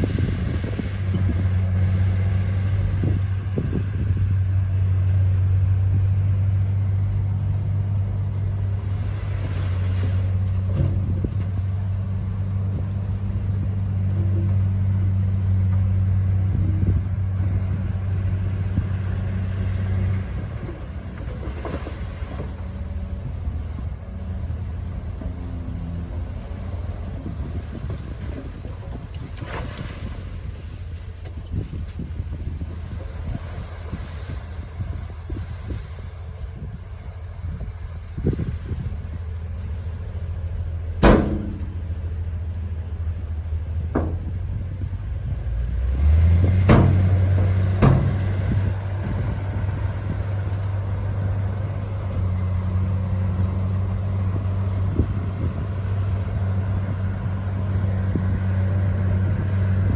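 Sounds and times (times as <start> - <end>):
bulldozer diesel engine droning: 0.0 - 59.9
metal clanks: 41.0 - 42.2, 43.9 - 44.4, 46.4 - 49.0.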